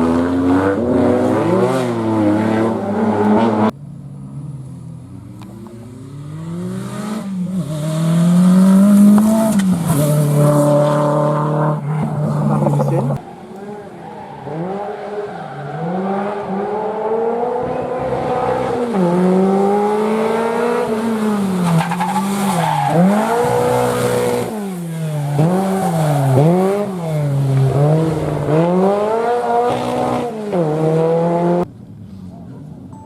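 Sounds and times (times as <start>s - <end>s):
rally car engine revving hard: 15.8s - 31.7s.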